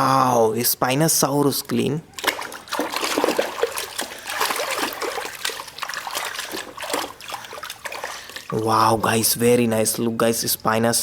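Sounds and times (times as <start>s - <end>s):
water trickling and splashing: 2.1s - 9.9s.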